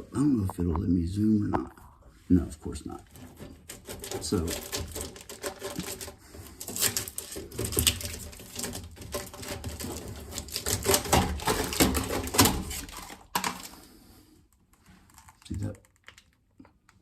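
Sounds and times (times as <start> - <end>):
sheet metal clicking and rattling: 3.1 - 13.6.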